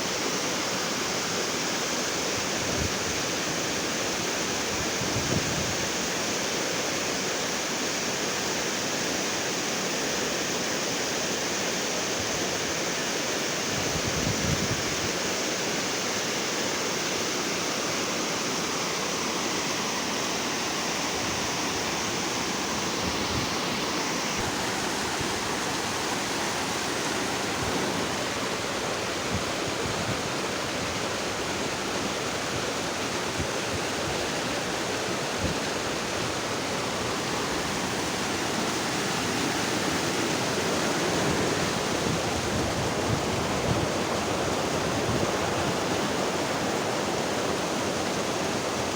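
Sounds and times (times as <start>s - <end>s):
waterfall rushing: 16.7s - 48.9s.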